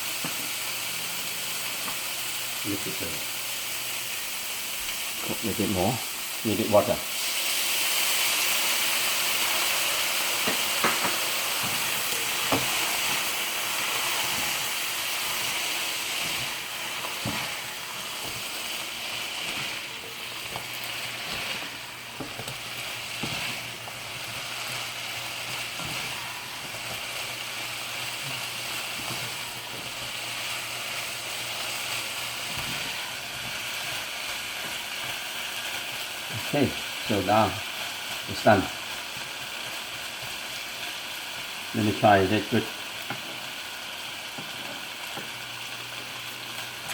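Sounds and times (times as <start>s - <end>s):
vegetables sizzling in a pan: 0.0s - 46.9s.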